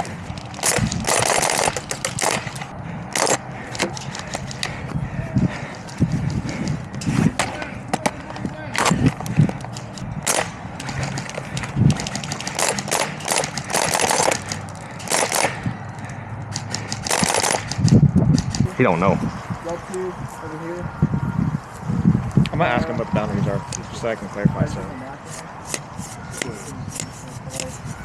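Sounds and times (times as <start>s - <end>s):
airsoft guns firing: 0.0s - 4.4s, 10.2s - 15.7s, 16.6s - 17.8s.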